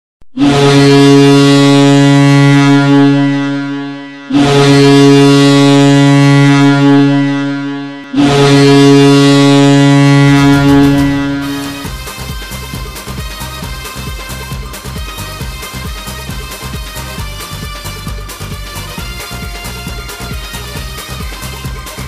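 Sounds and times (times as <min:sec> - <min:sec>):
deep goal horn blasts: 0:00.3 - 0:22.0
music: 0:10.3 - 0:22.0.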